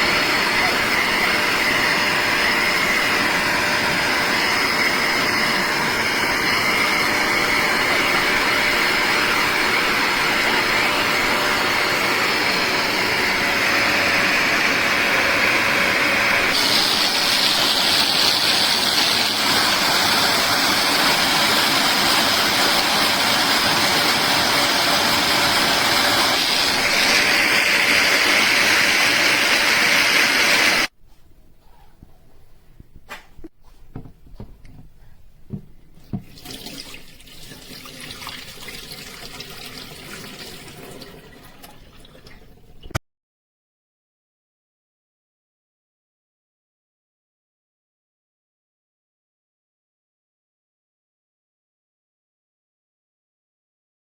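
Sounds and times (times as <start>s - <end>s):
carpet cleaner motor whine: 0.0s - 30.9s.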